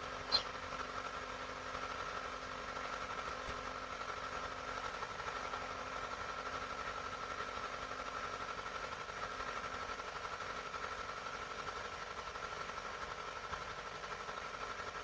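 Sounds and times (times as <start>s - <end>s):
constant high tone: 0.0s - 0.6s
background hum and hiss: 0.0s - 15.0s.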